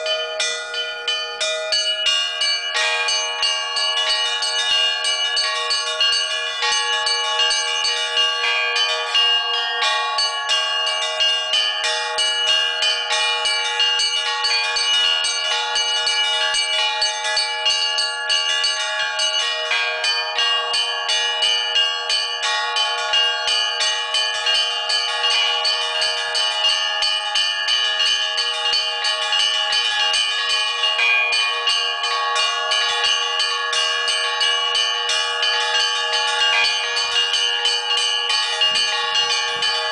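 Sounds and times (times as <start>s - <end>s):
church bells pealing: 0.0s - 39.9s.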